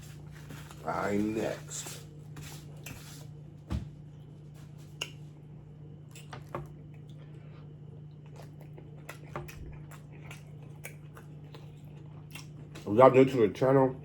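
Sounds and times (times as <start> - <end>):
steady low hum: 0.0 - 14.0
wet chewing and smacking: 4.9 - 5.4, 6.0 - 12.9.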